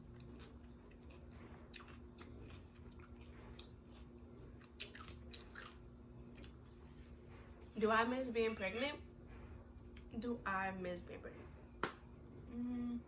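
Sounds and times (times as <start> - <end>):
chewing crunchy salad: 0.0 - 6.9
faint steady hum: 0.0 - 13.0.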